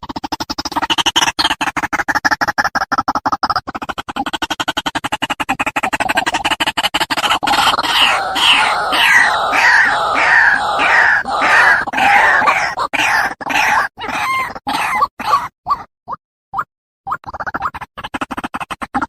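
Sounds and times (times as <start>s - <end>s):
waterhen calling: 7.5s - 15.0s.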